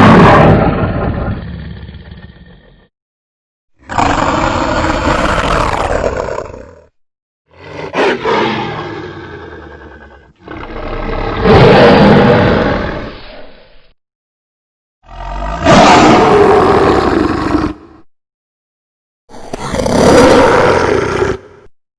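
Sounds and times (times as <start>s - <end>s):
monster roars: 0.0s - 2.9s, 3.8s - 6.9s, 7.5s - 13.5s, 15.1s - 18.1s, 19.3s - 21.7s.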